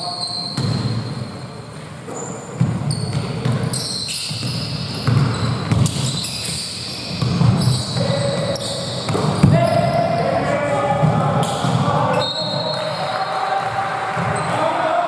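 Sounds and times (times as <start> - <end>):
basketball bouncing: 0.6 - 1.0, 2.6 - 6.2, 7.1 - 9.9.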